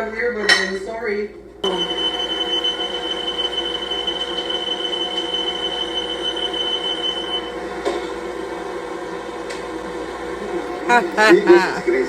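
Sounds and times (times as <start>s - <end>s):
steady background noise: 0.0s - 12.0s
smoke alarm high-pitched tone: 1.6s - 7.6s.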